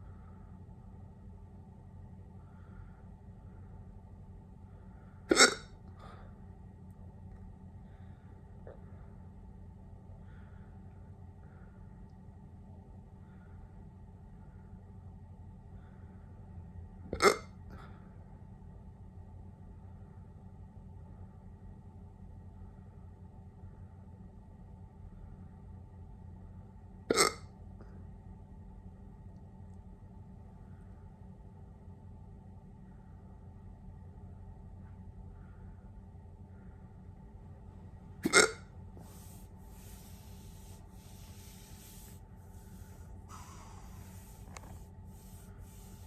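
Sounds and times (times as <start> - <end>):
person hiccuping: 5.3 - 5.7, 17.1 - 17.5, 27.1 - 27.5, 38.2 - 38.7
soft hissing noise: 39.0 - 46.0.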